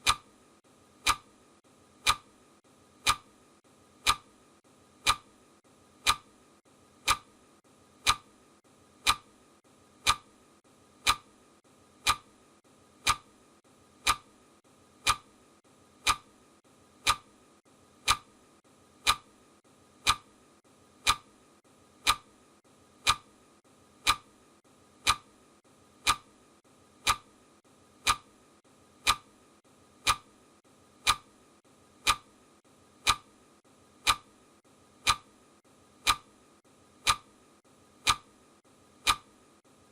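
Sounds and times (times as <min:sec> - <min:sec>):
clock ticking: 0:00.0 - 0:00.4, 0:01.0 - 0:01.4, 0:02.0 - 0:02.4, 0:03.0 - 0:03.4, 0:04.0 - 0:04.4, 0:05.0 - 0:05.4, 0:06.0 - 0:06.4, 0:07.0 - 0:07.4, 0:08.0 - 0:08.4, 0:09.0 - 0:09.4, 0:10.0 - 0:10.4, 0:11.0 - 0:11.4, 0:12.0 - 0:12.4, 0:13.0 - 0:13.4, 0:14.0 - 0:14.4, 0:15.0 - 0:15.4, 0:16.0 - 0:16.4, 0:17.0 - 0:17.4, 0:18.0 - 0:18.4, 0:19.0 - 0:19.4, 0:20.0 - 0:20.4, 0:21.0 - 0:21.4, 0:22.0 - 0:22.4, 0:23.0 - 0:23.4, 0:24.0 - 0:24.3, 0:25.0 - 0:25.4, 0:26.0 - 0:26.3, 0:27.0 - 0:27.3, 0:28.0 - 0:28.3, 0:29.0 - 0:29.4, 0:30.0 - 0:30.4, 0:31.0 - 0:31.4, 0:32.0 - 0:32.4, 0:33.0 - 0:33.4, 0:34.0 - 0:34.4, 0:35.0 - 0:35.4, 0:36.0 - 0:36.4, 0:37.0 - 0:37.4, 0:38.0 - 0:38.4, 0:39.0 - 0:39.4.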